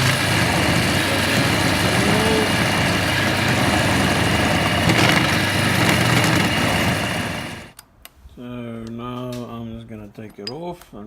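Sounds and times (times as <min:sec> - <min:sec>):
milling machine spindle running: 0:00.0 - 0:07.8.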